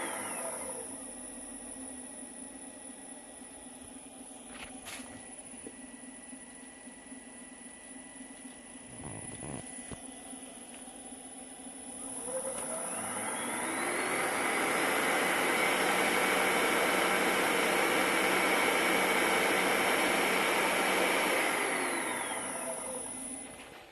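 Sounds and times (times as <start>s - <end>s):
electric motor whining: 8.8s - 10.1s, 11.9s - 23.4s.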